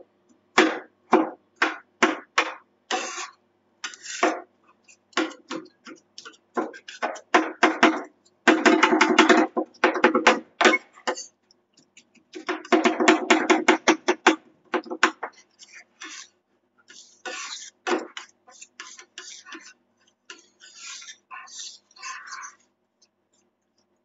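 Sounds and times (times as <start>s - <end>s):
spatulas scraping steel plate: 2.9s - 10.1s, 10.7s - 11.4s, 14.8s - 22.7s
metal spatulas tapping steel plate: 5.1s - 11.4s.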